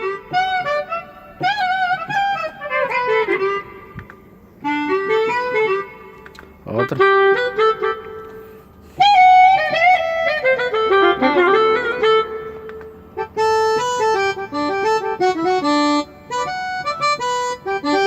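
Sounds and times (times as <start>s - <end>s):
synthesizer reed instrument melody: 9.0s - 12.5s.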